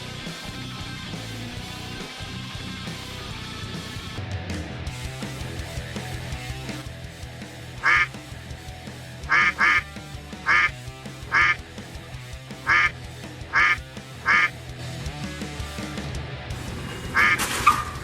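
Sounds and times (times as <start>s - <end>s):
background music: 3.7s - 18.0s
duck quacking: 7.8s - 8.1s, 9.2s - 11.6s, 12.6s - 14.6s, 17.2s - 17.5s.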